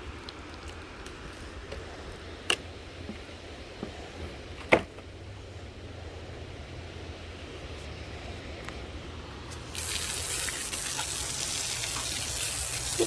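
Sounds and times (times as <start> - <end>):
spraying hiss: 9.5 - 13.0.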